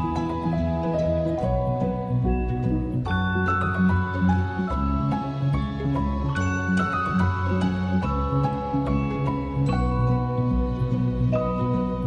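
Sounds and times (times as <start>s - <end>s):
gentle new-age instrumental music: 0.0s - 12.0s.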